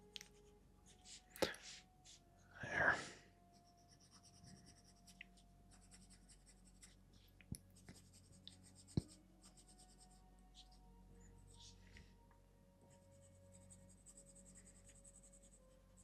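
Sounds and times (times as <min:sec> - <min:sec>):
coloured pencil scratching on paper: 0:03.5 - 0:10.8, 0:12.9 - 0:16.0.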